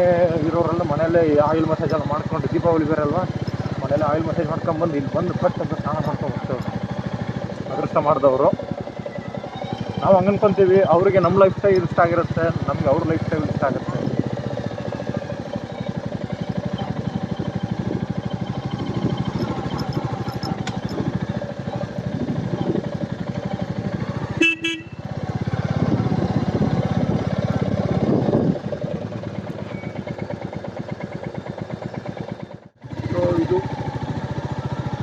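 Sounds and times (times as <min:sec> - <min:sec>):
motorcycle engine thumping: 0:00.4 - 0:07.8, 0:16.0 - 0:32.4
horn toot: 0:24.3 - 0:25.1.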